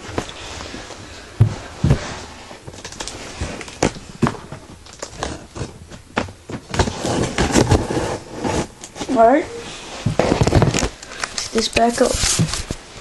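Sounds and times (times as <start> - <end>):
heavy thumps: 0.0 - 2.3
cardboard scraping and tearing: 6.6 - 9.3.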